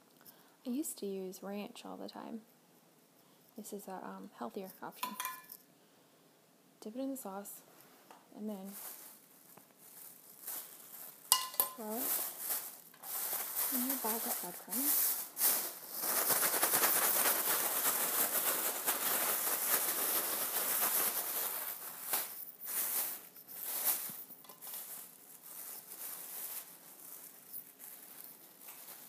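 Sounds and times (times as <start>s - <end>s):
plastic bag of breadcrumbs rustling: 8.5s - 29.0s.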